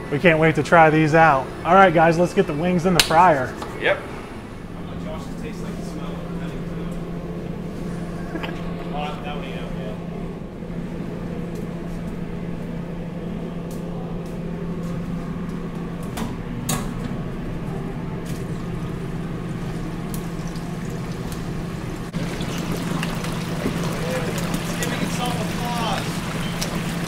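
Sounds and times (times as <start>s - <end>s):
kitchen hum: 0.0s - 27.0s
deep fryer hissing: 16.0s - 27.0s.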